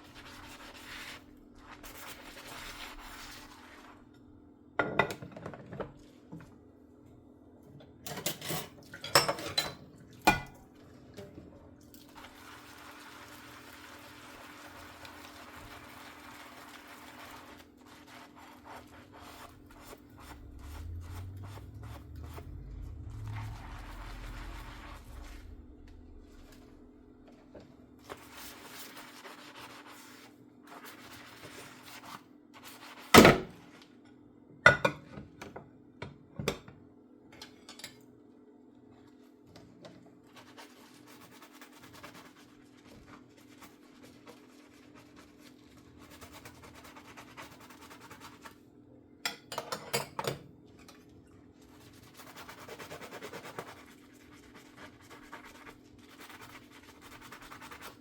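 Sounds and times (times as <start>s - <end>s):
sponge scrubbing dishes: 0.0s - 4.2s, 12.0s - 26.8s, 27.4s - 33.8s, 39.2s - 48.6s, 50.7s - 58.0s
dishes clattering: 4.8s - 5.9s, 8.1s - 10.6s
faint steady hum: 17.8s - 29.1s.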